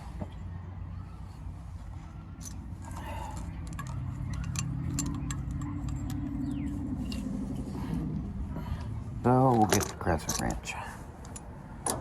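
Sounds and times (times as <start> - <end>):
hand tools clinking: 2.4 - 7.4, 9.4 - 12.0.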